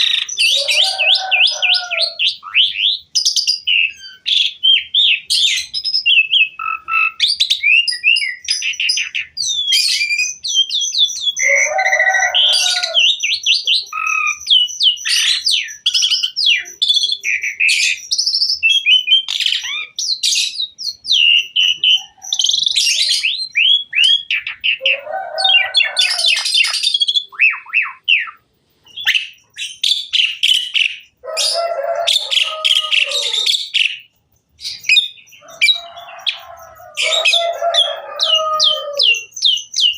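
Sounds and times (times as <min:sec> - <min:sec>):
harsh rasping bird chatter: 0:00.0 - 0:39.9
starling singing whistles and trills: 0:00.0 - 0:39.9.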